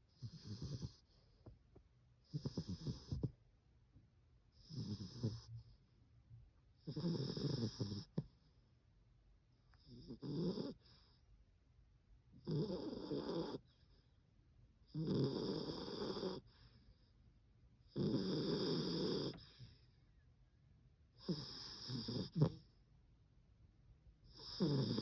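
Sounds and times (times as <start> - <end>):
dog snoring: 0.1 - 1.2, 2.2 - 3.4, 4.5 - 5.8, 6.8 - 8.4, 9.7 - 11.2, 12.4 - 14.0, 14.9 - 16.7, 17.9 - 19.9, 21.2 - 22.7, 24.3 - 25.0
quiet breathing: 4.5 - 6.1, 9.7 - 11.5, 15.9 - 17.4, 18.7 - 20.3.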